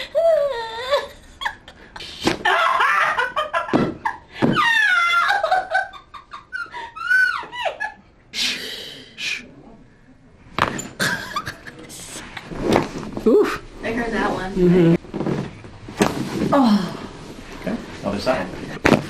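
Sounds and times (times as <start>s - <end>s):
young women laughing and squealing: 2.4s - 8.1s.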